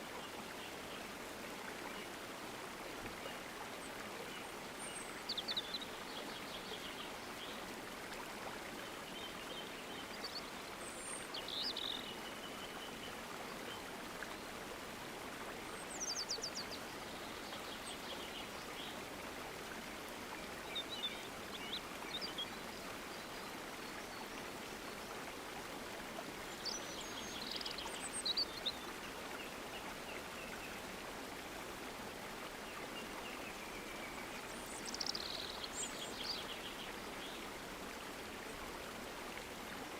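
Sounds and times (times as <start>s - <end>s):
stream flowing: 0.0s - 39.9s
small birds chirping: 32.9s - 37.4s.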